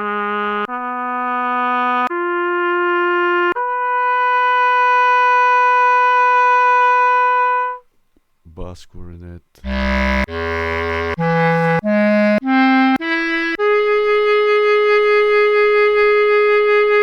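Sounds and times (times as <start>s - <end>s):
trumpet playing single notes: 9.6s - 14.9s.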